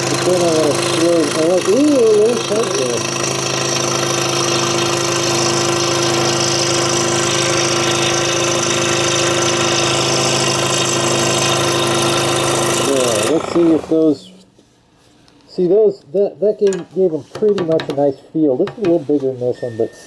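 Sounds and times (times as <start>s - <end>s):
scroll saw motor hum: 0.0s - 14.2s.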